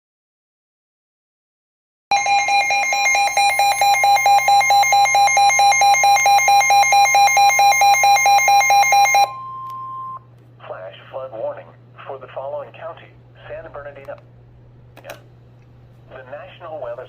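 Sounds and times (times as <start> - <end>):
steady high tone: 2.1 - 10.2
radio alarm beeping: 2.1 - 10.3.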